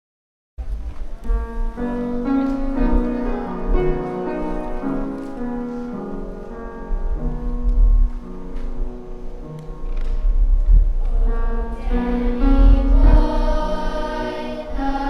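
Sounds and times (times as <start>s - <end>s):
sustained piano-like chords: 0.6s - 15.0s
deep bass: 6.9s - 8.9s, 9.6s - 13.8s.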